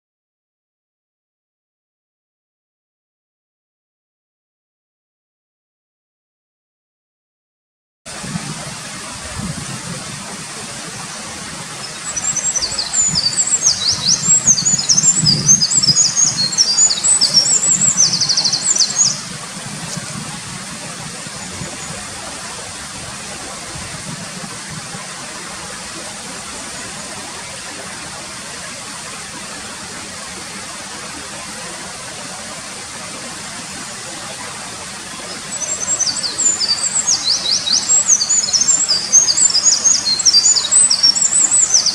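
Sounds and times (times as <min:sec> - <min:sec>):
mountain stream rushing: 0:08.1 - 0:41.9
wren singing: 0:11.9 - 0:19.3, 0:35.6 - 0:41.9.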